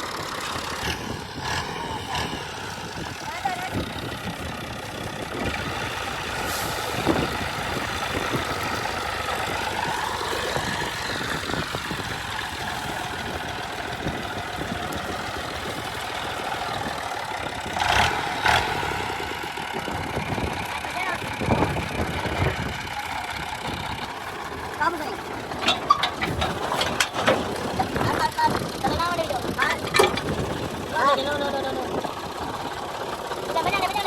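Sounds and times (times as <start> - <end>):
combine harvester engine running: 0.0 - 34.0.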